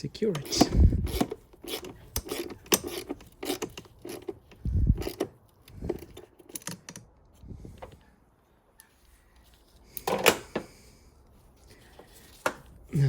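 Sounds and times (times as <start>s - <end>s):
socket wrench clicking: 0.4s - 7.1s.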